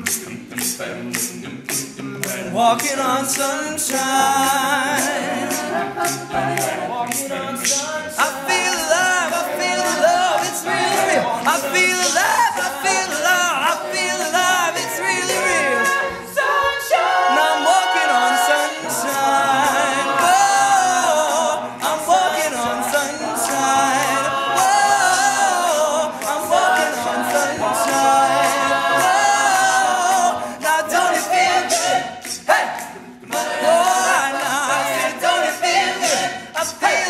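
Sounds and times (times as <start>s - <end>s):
a cappella group singing: 0.0s - 37.0s.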